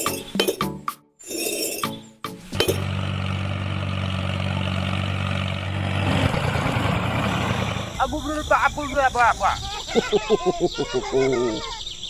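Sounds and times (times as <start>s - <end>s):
engine idling hum: 2.4s - 10.2s.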